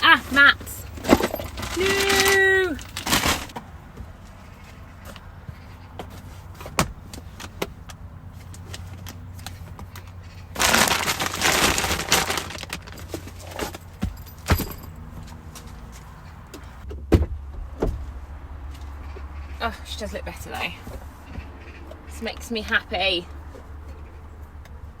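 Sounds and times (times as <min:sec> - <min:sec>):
loud rustling: 0:00.0 - 0:03.6, 0:08.4 - 0:16.8.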